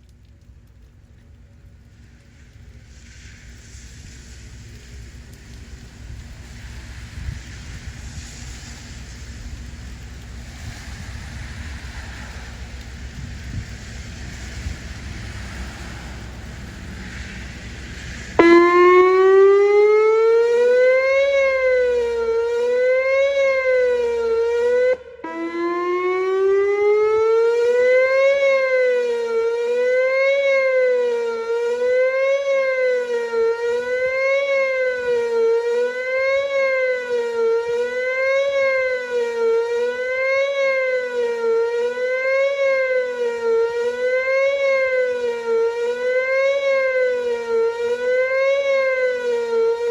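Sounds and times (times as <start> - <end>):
wind noise on microphone: 3.6 - 19.6
wavering electronic warning siren: 5.5 - 49.9.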